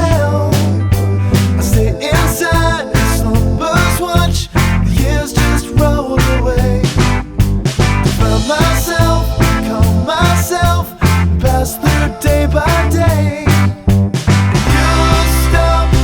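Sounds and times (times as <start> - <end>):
upbeat rock song with vocals: 0.0 - 16.0.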